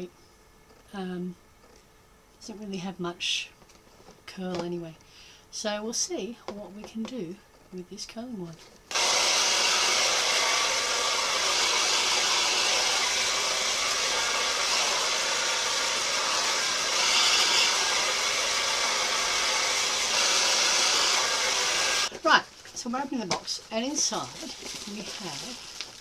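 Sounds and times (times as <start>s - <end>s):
hair dryer running: 8.9s - 22.1s.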